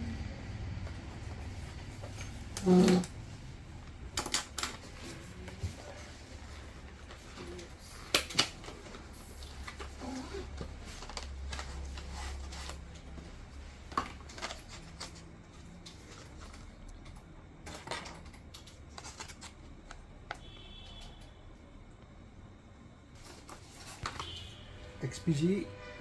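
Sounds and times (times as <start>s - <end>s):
packaging rustling and clicking: 7.0s - 20.0s.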